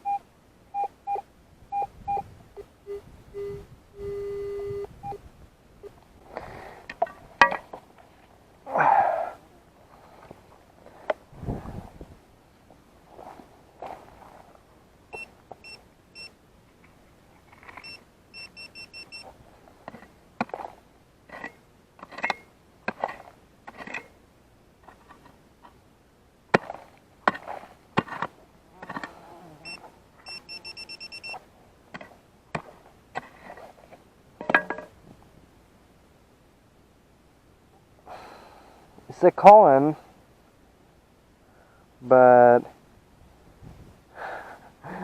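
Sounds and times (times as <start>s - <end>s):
short high beeps: 0.0s - 0.2s, 0.8s - 5.2s, 17.8s - 19.2s, 29.6s - 31.4s
digging scrapes and knocks: 19.8s - 24.2s, 26.5s - 29.8s, 31.9s - 35.0s.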